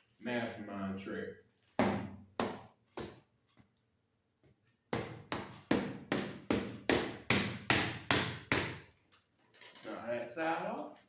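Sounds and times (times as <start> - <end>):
sharp hammer-like knocks: 1.8 - 3.2, 4.9 - 8.9.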